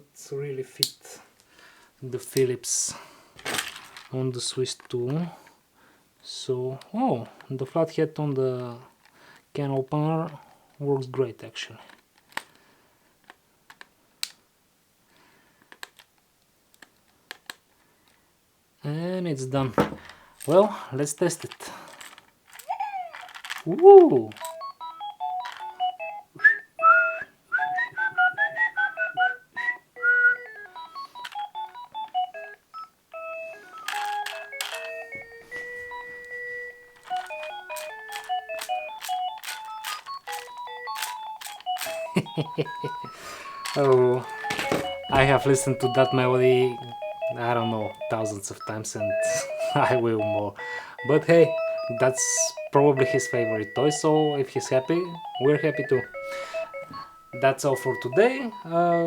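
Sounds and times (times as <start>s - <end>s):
toy beeping melody: 24.0s - 59.0s.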